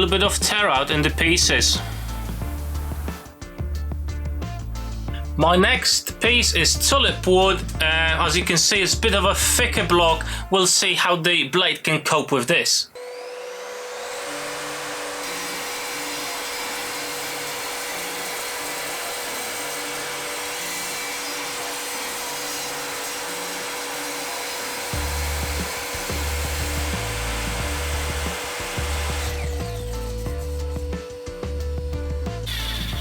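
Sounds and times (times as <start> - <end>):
mitre saw cutting wood: 0.0 - 3.4, 13.0 - 33.0
background music with bass: 0.0 - 10.6, 25.0 - 33.0.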